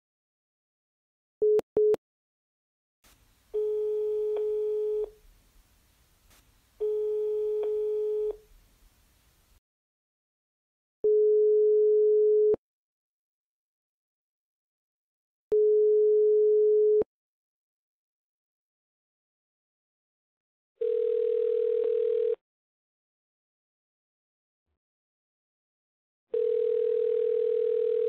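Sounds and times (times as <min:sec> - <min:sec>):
faint line hiss: 0:03.1 - 0:09.6
telephone ringback tone: 0:03.6 - 0:05.1, 0:06.8 - 0:08.4, 0:11.1 - 0:12.6, 0:15.6 - 0:17.0, 0:20.8 - 0:22.4, 0:26.3 - 0:28.0.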